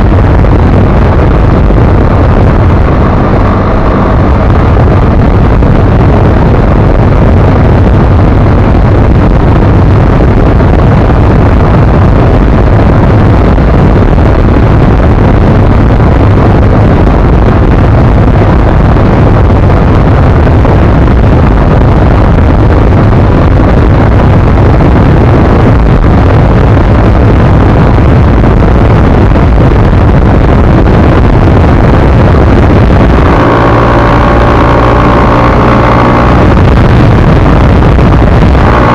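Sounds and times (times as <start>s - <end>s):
motorcycle engine: 0.0s - 21.3s, 30.6s - 38.9s
wind buffeting on microphone: 0.0s - 38.9s.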